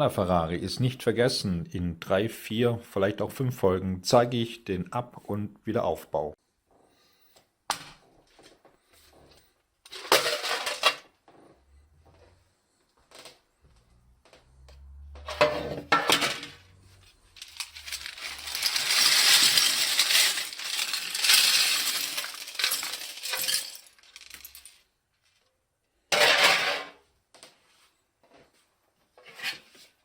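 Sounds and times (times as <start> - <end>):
plastic parts clattering and rattling: 7.8 - 11.6, 13.0 - 13.4, 15.1 - 25.5, 26.1 - 26.9.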